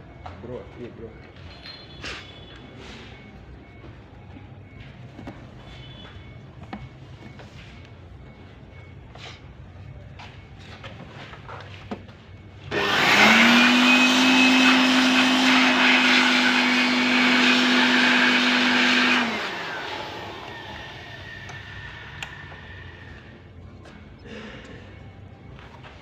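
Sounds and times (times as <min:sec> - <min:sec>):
high-speed electric motor running: 0:12.7 - 0:23.3.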